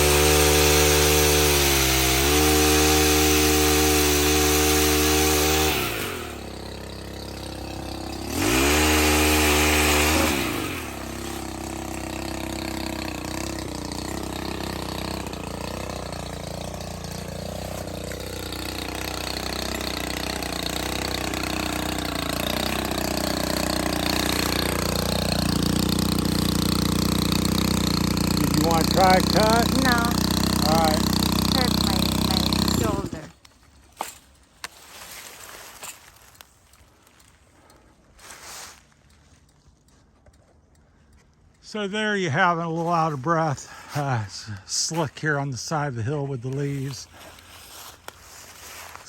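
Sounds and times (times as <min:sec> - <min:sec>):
small engine revving and idling: 0:00.0 - 0:33.4.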